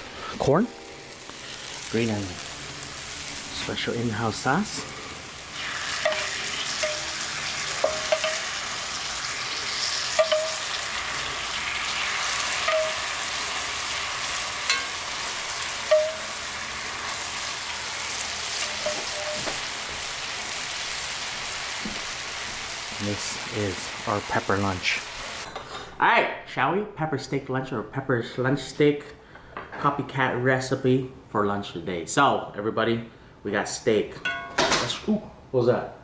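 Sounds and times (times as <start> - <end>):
food sizzling on hot plate: 0.7 - 25.5.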